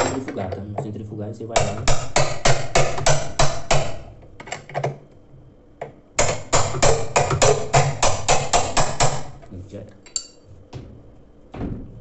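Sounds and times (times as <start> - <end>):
hammer knocking on metal wrench: 1.6 - 5.0, 6.2 - 9.4.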